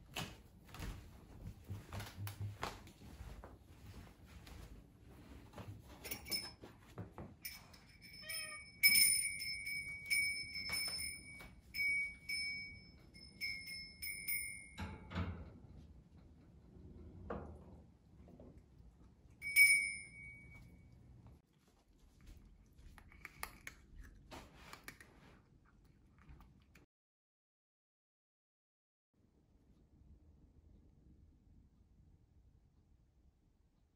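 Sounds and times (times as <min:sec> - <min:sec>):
short ringing clinks: 0:07.4 - 0:15.1, 0:19.4 - 0:20.8
cat meowing: 0:08.2 - 0:08.7.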